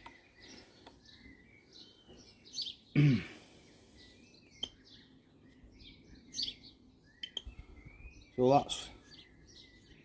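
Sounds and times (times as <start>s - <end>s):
small birds chirping: 0.0s - 10.0s
man clearing his throat: 2.9s - 3.4s.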